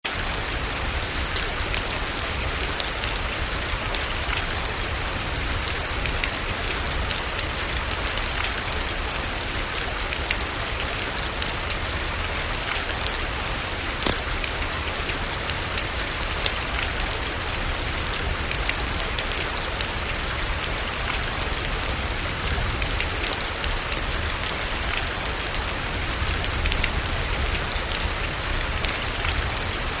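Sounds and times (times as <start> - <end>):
steady rain falling: 0.0 - 30.0
fireplace fire crackling: 0.1 - 29.9.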